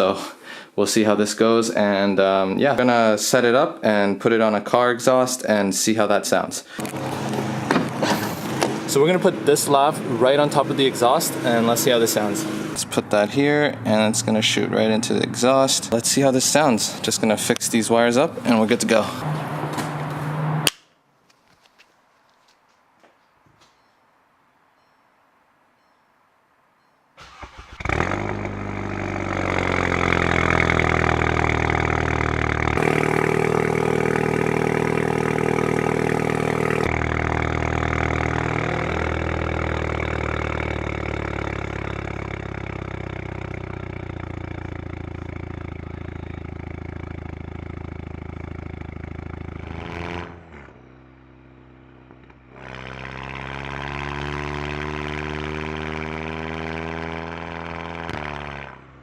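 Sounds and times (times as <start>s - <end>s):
car engine idling: 6.8s - 20.6s, 27.2s - 49.8s.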